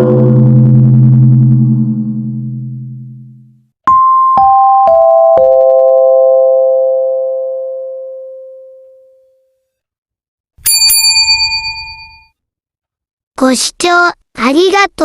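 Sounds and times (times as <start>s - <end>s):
electronic bell chime: 10.6s - 12.3s.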